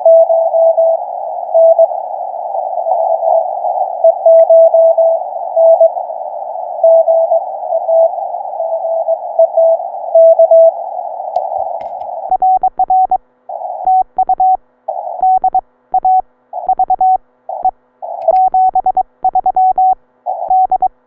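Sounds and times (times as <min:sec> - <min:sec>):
receiver hiss: 0:00.0 - 0:21.0
morse code tone: 0:15.2 - 0:20.9.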